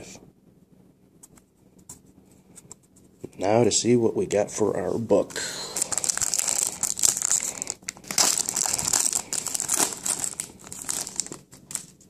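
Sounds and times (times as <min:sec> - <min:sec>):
wrapper tearing and crinkling: 0:05.6 - 0:12.0.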